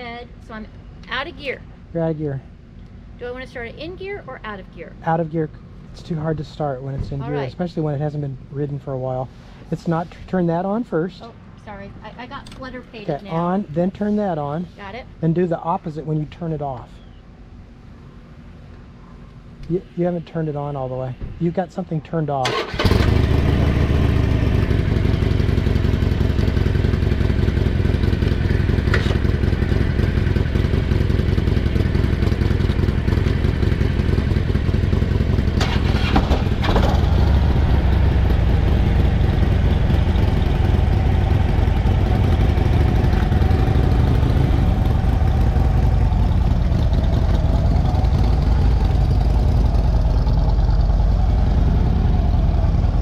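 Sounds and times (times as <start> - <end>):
motorcycle engine idling: 22.5 - 53.0.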